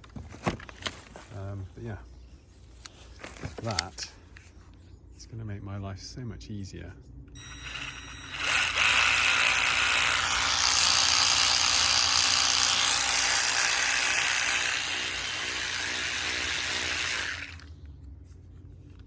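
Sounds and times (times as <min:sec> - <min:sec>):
cordless ratchet whirring: 0:07.4 - 0:17.7.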